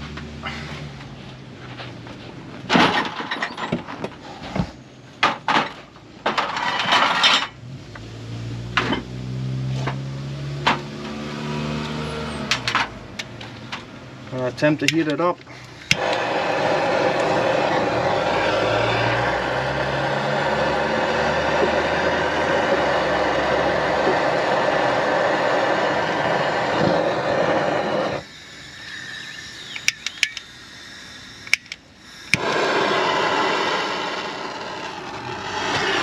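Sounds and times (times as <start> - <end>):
torch igniter clicks: 14.8 - 18.2, 28.9 - 30.6, 31.3 - 36.0
gas torch flame hissing: 14.8 - 36.0.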